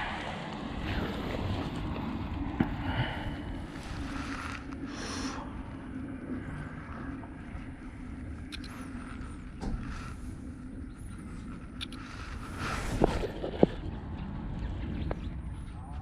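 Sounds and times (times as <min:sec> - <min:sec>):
wind buffeting microphone: 0:00.0 - 0:16.0
light clicks: 0:08.4 - 0:10.2.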